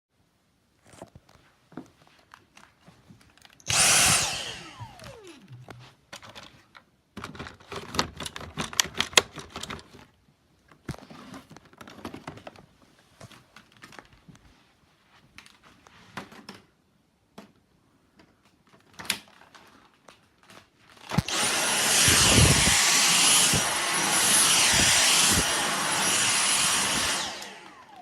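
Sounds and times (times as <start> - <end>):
small motor spinning down: 3.7 - 5.8, 21.2 - 28.0.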